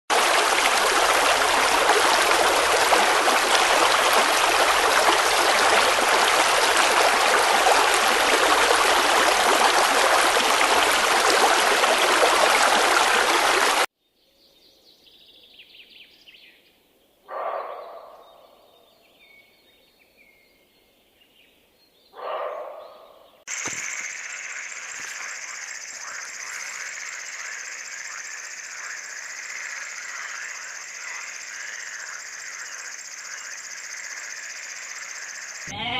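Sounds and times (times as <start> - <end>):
rushing water: 0.1 - 13.9
high insect chorus: 23.5 - 35.9.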